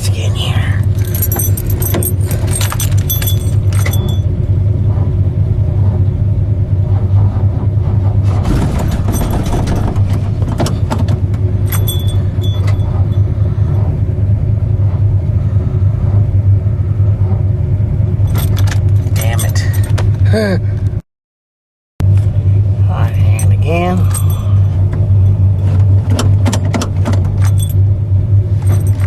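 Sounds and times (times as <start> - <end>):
metallic rattles: 0.8 - 4.3, 8.1 - 14.1, 18.2 - 20.2, 23.1 - 29.0
engine cranking on starter: 8.1 - 13.9.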